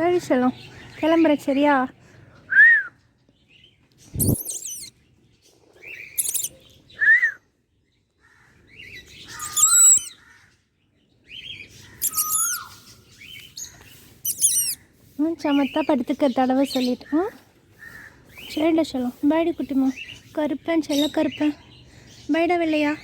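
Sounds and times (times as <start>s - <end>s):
shrill bird chirps: 4.1s - 5.0s, 5.8s - 7.3s, 8.8s - 10.3s, 11.3s - 18.8s.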